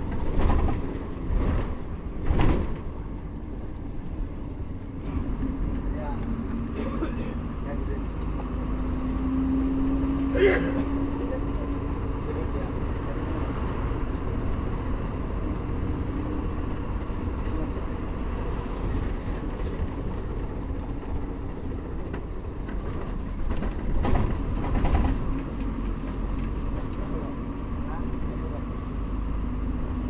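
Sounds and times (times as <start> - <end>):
bus engine drone and road noise: 0.0 - 30.0
knocks and rattles: 22.0 - 26.9.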